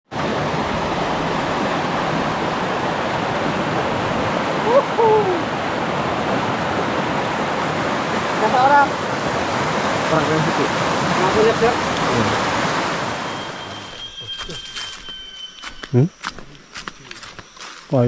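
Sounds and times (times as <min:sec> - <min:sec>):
flowing water rushing: 0:00.1 - 0:18.0
short two-part call: 0:13.2 - 0:17.2.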